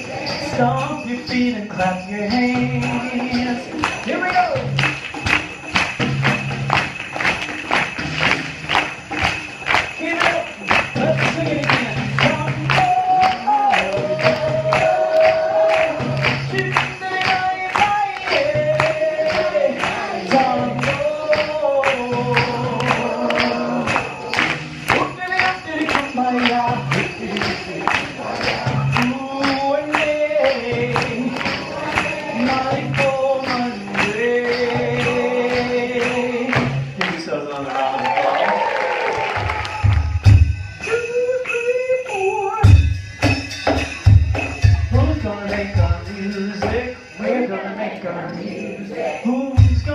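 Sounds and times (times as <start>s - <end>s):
sharp percussion strokes: 0.0s - 37.6s, 39.4s - 49.9s.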